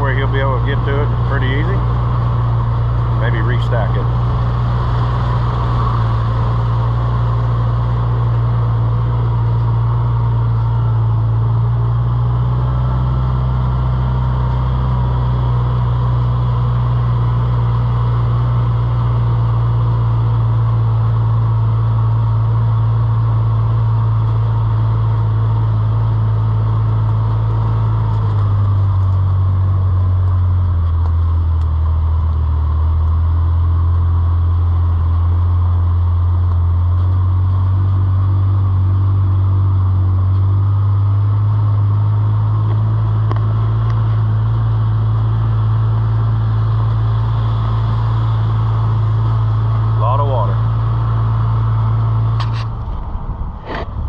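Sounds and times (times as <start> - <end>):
low engine drone: 0.0 - 54.0.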